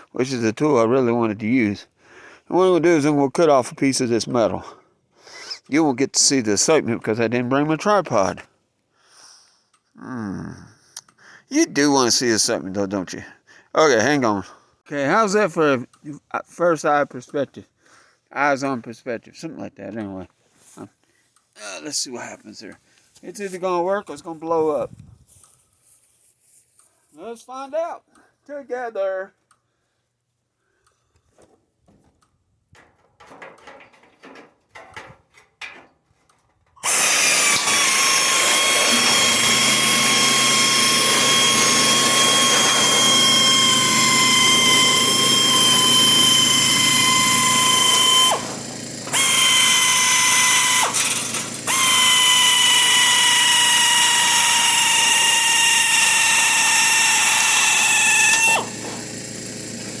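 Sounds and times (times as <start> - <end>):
air compressor motor hum: 36.8 - 60.0
air shears high whine: 36.8 - 60.0.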